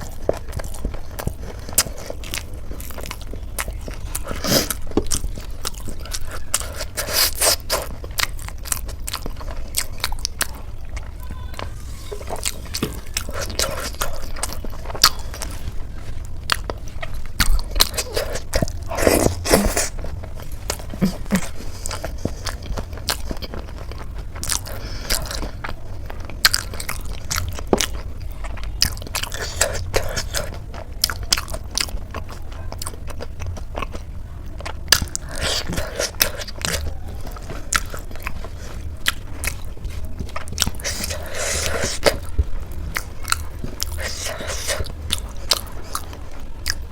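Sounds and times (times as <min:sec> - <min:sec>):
crunching and chewing food: 0:00.0 - 0:46.9
low hum: 0:09.0 - 0:30.0.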